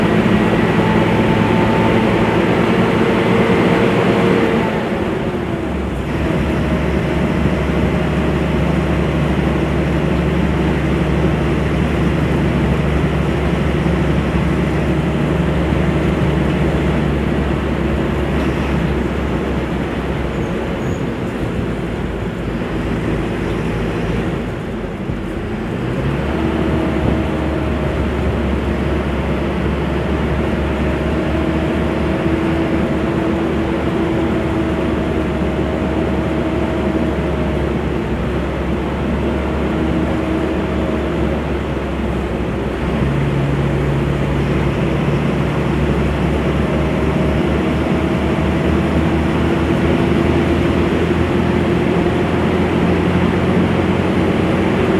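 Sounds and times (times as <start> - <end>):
bus diesel engine droning: 0.0 - 54.9.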